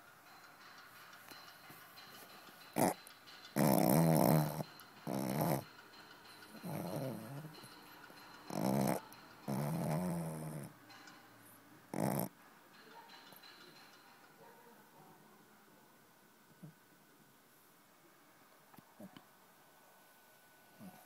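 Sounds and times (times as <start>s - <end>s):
dog snoring: 2.8s - 3.0s, 3.6s - 5.7s, 6.5s - 7.7s, 8.5s - 10.8s, 11.9s - 12.3s.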